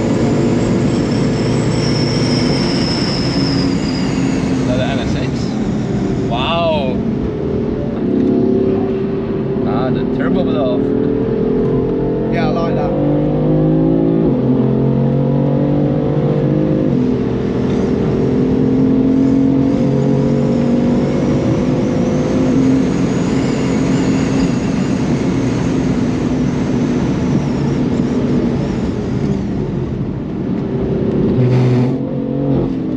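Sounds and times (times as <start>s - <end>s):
car engine accelerating: 0.0s - 32.9s
turbo whistle: 0.4s - 4.9s, 31.4s - 32.0s.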